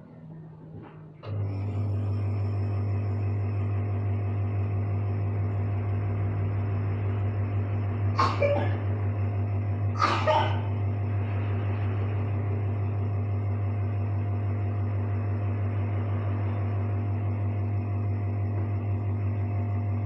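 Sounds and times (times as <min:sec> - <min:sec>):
nebulizer compressor hum: 0:01.2 - 0:20.0
person coughing: 0:08.2 - 0:08.8, 0:10.0 - 0:10.7.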